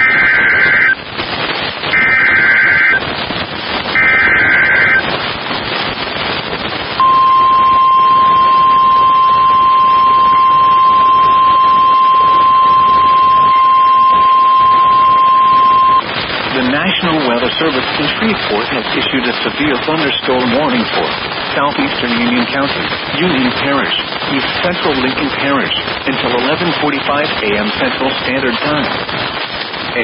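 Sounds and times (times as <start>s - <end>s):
steady alarm tone: 0.0s - 1.0s, 1.9s - 3.0s, 4.0s - 5.0s, 7.0s - 16.0s
radio hiss: 0.0s - 30.0s
warbling data burst screech: 2.0s - 3.0s, 4.0s - 5.0s, 7.0s - 16.0s.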